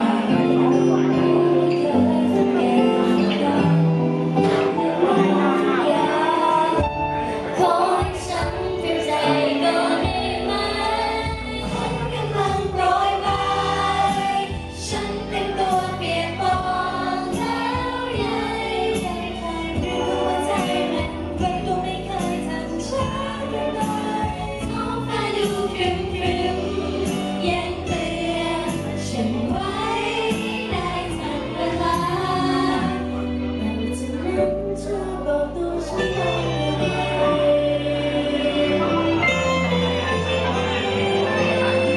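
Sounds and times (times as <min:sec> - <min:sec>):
person singing: 0:00.0 - 0:11.0, 0:33.6 - 0:41.9
instrumental backing track: 0:00.0 - 0:41.9.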